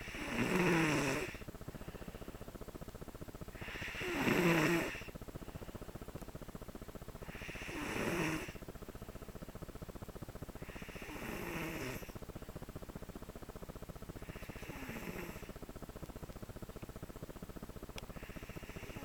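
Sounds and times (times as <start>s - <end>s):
child snoring: 0.0s - 1.5s, 3.6s - 5.2s, 7.2s - 8.6s, 10.6s - 12.2s, 14.2s - 15.6s, 18.1s - 19.0s.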